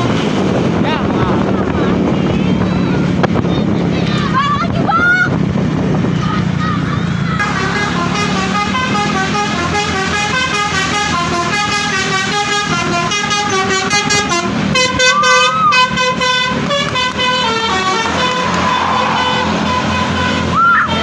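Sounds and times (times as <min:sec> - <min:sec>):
musical bus horn melody: 0:07.4 - 0:21.0.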